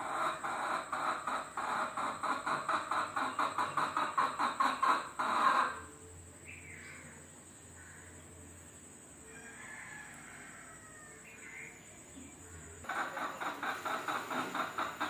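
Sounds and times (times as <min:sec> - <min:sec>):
hen cackling: 0:00.0 - 0:05.9, 0:12.8 - 0:15.0
faint distant chirps: 0:04.8 - 0:15.0.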